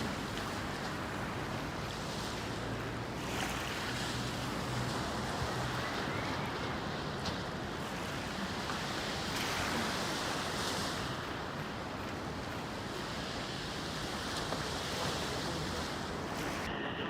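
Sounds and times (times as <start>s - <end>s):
steady rushing noise: 10.1s - 17.0s.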